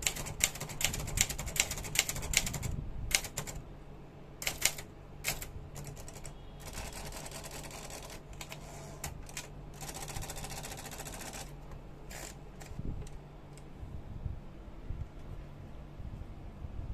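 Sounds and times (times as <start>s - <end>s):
rapid buzzing typewriter clatter: 0.0s - 3.6s, 4.4s - 12.8s.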